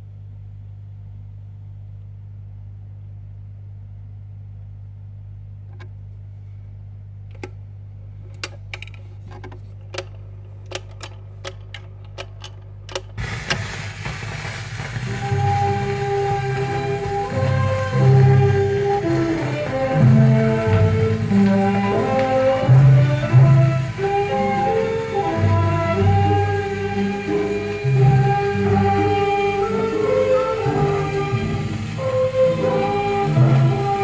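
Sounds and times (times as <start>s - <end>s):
steady low hum: 0.0s - 34.0s
record surface crackle: 7.2s - 32.0s
music from record: 13.2s - 34.0s.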